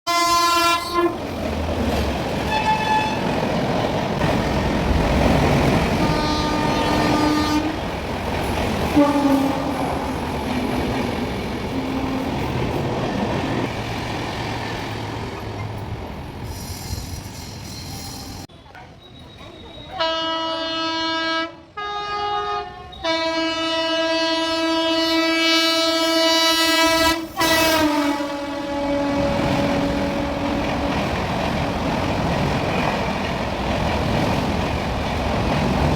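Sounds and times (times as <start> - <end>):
train horn blasts: 0.1 - 1.2, 2.5 - 3.3, 5.9 - 7.9, 9.0 - 10.2, 11.7 - 12.5, 20.0 - 31.2
train rumbling past: 0.1 - 35.9.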